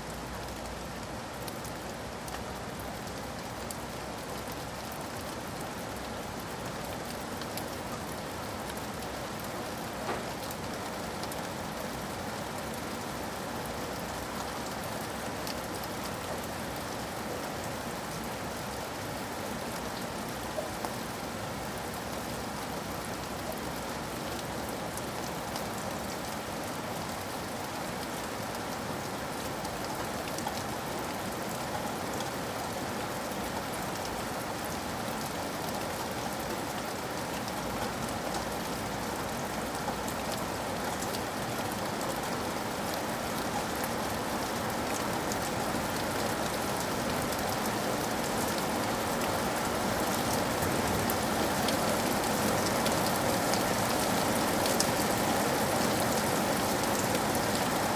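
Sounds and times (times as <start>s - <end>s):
heavy rain hitting window: 9.8s - 10.8s.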